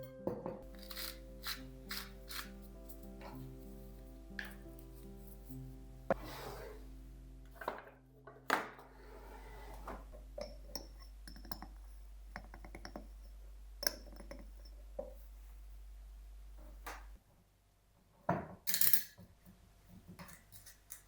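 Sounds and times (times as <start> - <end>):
dishes and cutlery clinking: 10.4 - 15.2.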